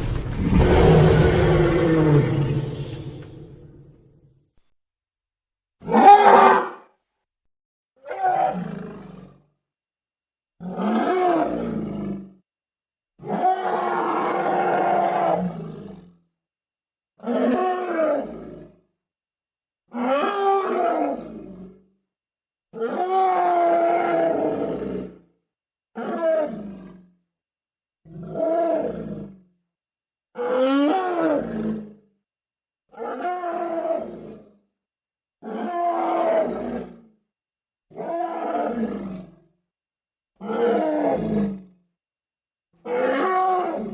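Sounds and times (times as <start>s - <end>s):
elephant roaring calls: 0.0s - 4.0s.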